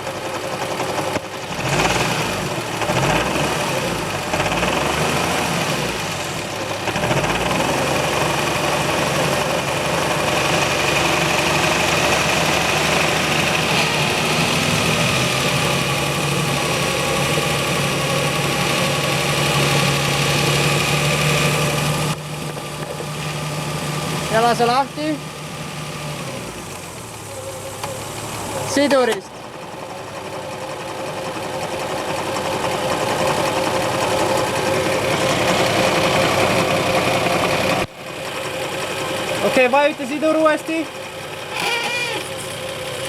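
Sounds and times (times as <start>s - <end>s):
car engine revving: 1.5s - 29.3s, 32.7s - 38.0s.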